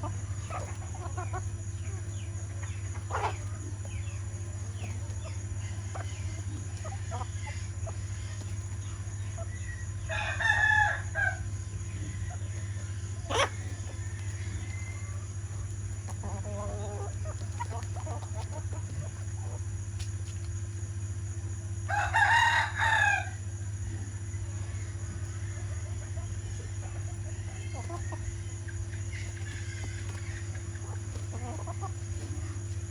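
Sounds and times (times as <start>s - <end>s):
hens clucking: 0.0s - 32.9s
steady low hum: 0.0s - 32.9s
rooster crowing: 9.6s - 15.6s, 21.9s - 23.5s.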